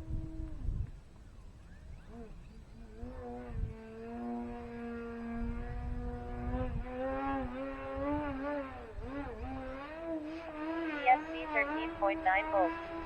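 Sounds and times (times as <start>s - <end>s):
wind rumble on microphone: 0.0s - 13.0s
electric motor and propeller buzzing: 2.0s - 11.3s.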